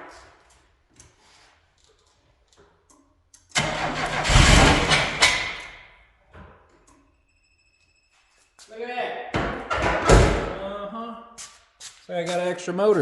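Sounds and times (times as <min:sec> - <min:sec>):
car engine starting and revving: 0:03.6 - 0:05.6.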